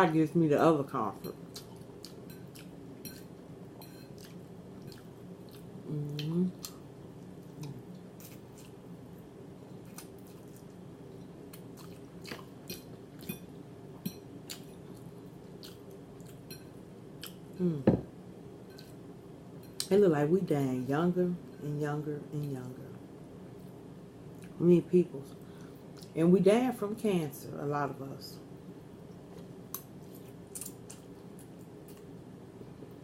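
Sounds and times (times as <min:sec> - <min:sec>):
person chewing food: 0:01.3 - 0:17.6.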